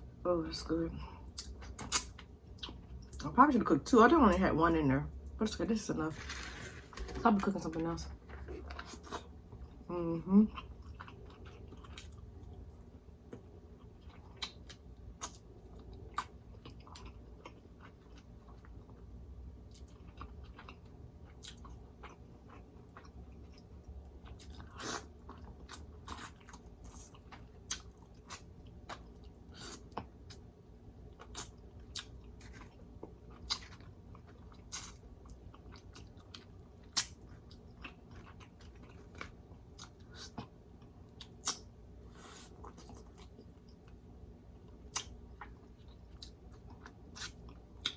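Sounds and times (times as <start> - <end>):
person chewing crispy fish: 10.5 - 30.4, 31.1 - 44.0.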